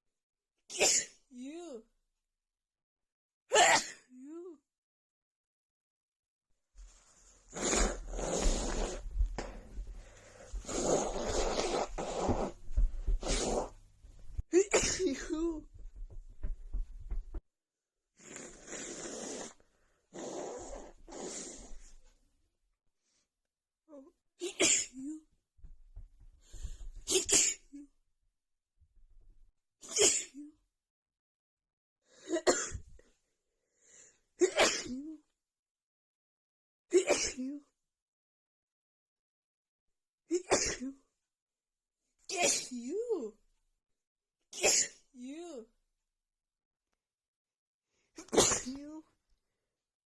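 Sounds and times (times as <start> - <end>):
woman sneezing: 0.7 - 1.3, 3.5 - 4.2, 14.5 - 15.6, 24.4 - 25.2, 27.1 - 27.8, 29.8 - 30.5, 34.4 - 35.2, 36.9 - 37.6, 40.3 - 41.0, 42.3 - 42.8, 44.6 - 45.1, 48.2 - 49.0
woman blowing her nose: 7.4 - 9.0, 10.5 - 13.8, 18.2 - 22.0, 48.2 - 48.8.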